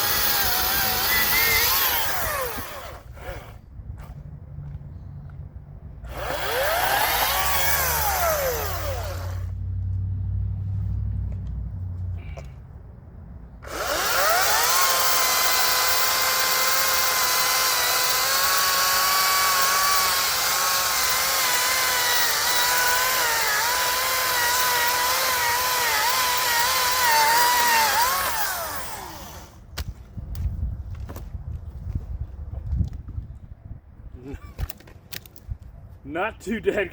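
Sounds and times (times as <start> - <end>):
chainsaw cutting wood: 0.0 - 3.6, 6.1 - 9.5, 13.6 - 29.6.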